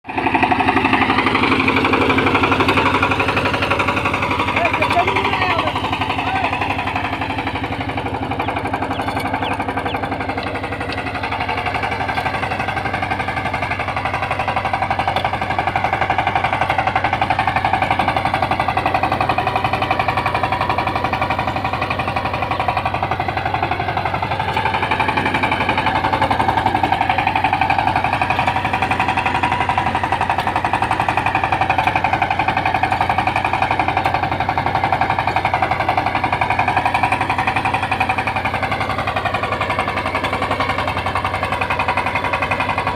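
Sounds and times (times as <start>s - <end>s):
diesel tiller engine chugging: 0.0s - 42.9s.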